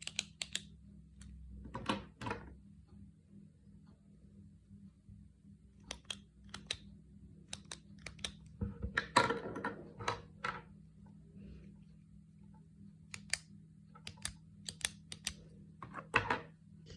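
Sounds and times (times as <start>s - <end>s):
pen clicking: 5.9s - 6.8s, 7.5s - 8.4s, 14.0s - 15.4s.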